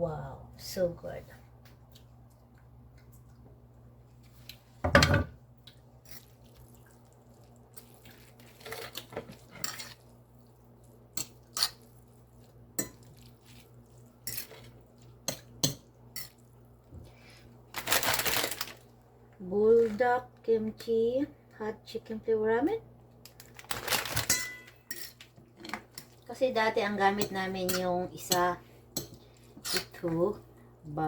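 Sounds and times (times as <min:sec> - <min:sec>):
metal utensils clinking: 0:23.9 - 0:25.2.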